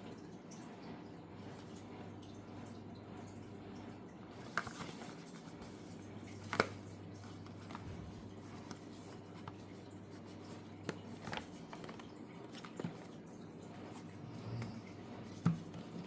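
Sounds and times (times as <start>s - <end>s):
steady low hum: 6.9s - 11.0s.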